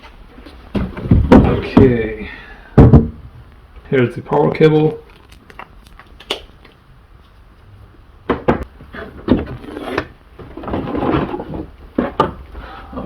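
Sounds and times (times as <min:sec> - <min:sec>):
sharp knocks: 0:02.8 - 0:03.2.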